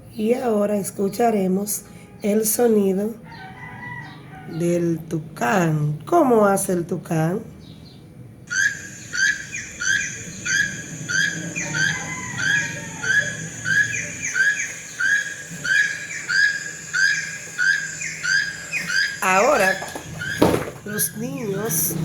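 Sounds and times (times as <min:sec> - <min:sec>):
toucan calling: 0:08.5 - 0:22.0.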